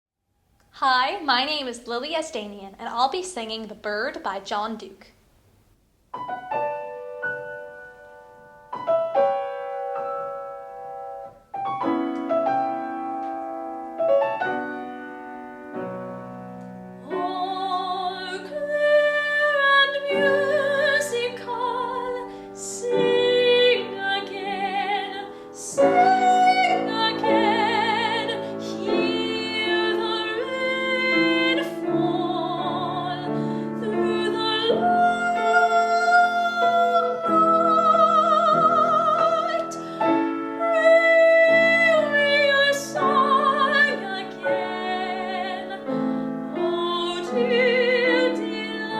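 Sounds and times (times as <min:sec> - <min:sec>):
piano accompaniment: 0:06.1 - 0:48.9
woman singing with vibrato: 0:17.0 - 0:48.9.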